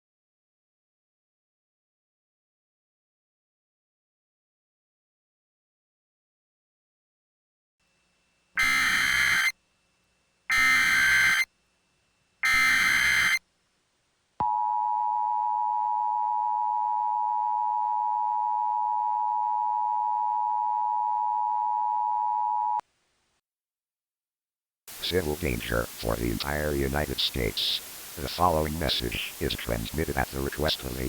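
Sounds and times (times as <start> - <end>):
steady dual tone alert signal: 8.6 - 9.6, 10.5 - 11.5, 12.4 - 13.4.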